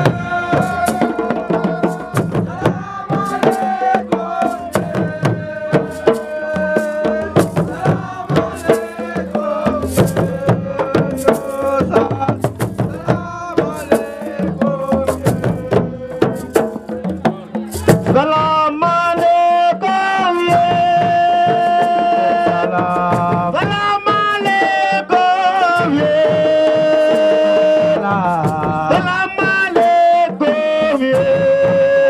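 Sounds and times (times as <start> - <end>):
hand drum percussion: 0.0 - 32.0.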